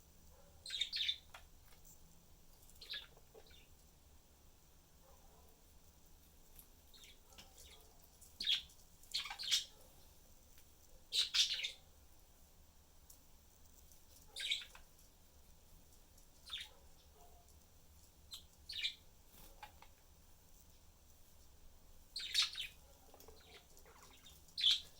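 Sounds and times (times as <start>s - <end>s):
budgerigars chirping: 0.6s - 1.4s, 2.8s - 3.7s, 8.4s - 9.7s, 11.2s - 11.8s, 14.4s - 14.8s, 16.5s - 16.7s, 18.3s - 19.0s, 22.2s - 24.9s.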